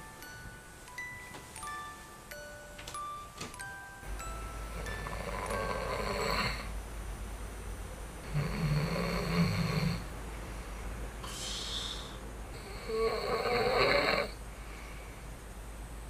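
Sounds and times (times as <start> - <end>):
man snoring: 5.0 - 6.7, 8.2 - 10.1, 11.3 - 14.4.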